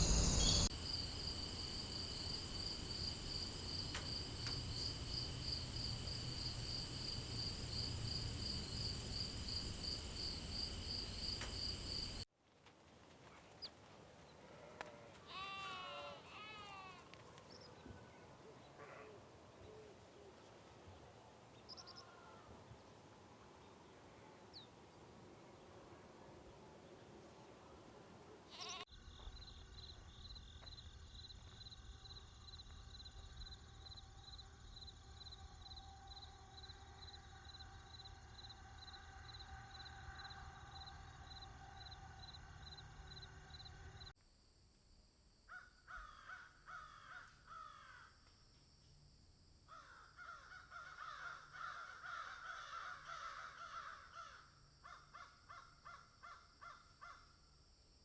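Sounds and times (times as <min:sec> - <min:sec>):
high pulsing chirp: 0:00.0 - 0:00.7
steady low hum: 0:00.0 - 0:12.2.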